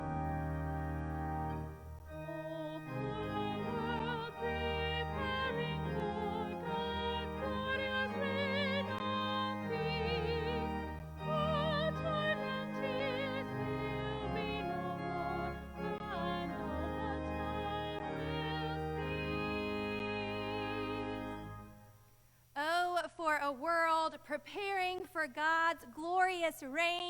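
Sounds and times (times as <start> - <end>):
sustained low accompaniment: 0.0 - 21.8
operatic voice singing a hymn: 2.2 - 21.4.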